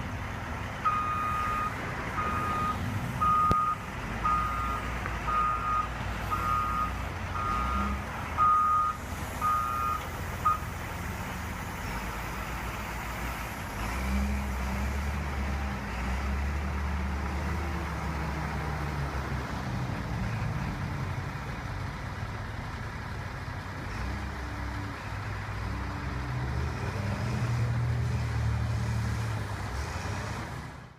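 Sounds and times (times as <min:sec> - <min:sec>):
heavy vehicle engine running: 0:00.0 - 0:30.9
vehicle backup alarm beeping: 0:00.8 - 0:10.7.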